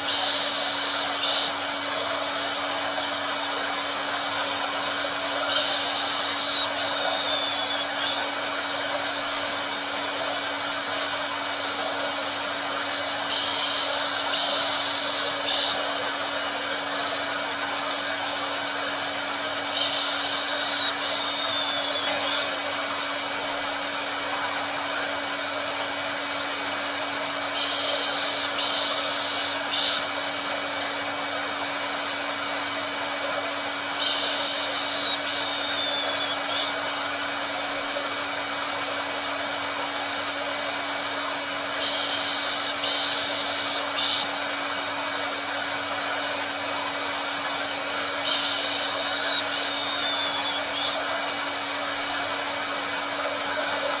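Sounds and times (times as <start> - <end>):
hair dryer blowing: 0.0 - 54.0
short falling whistle: 5.5 - 8.2, 19.8 - 22.5, 34.1 - 36.8, 48.3 - 51.0.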